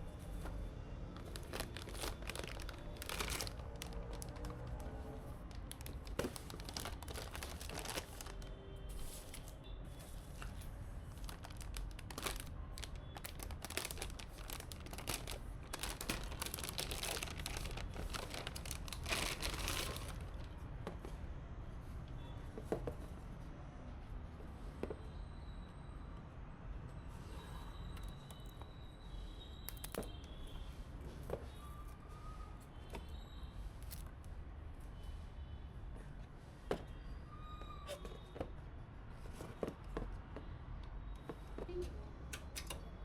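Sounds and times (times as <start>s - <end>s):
plastic wrapping crinkling: 1.1s - 8.5s, 11.1s - 20.5s, 29.7s - 30.1s.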